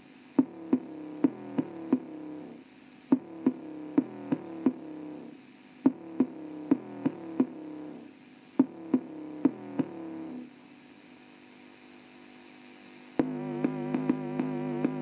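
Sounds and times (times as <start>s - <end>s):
faint hum: 0.0s - 15.0s
sharp knocking beat: 0.4s - 2.2s, 3.1s - 4.9s, 5.9s - 7.6s, 8.6s - 10.0s.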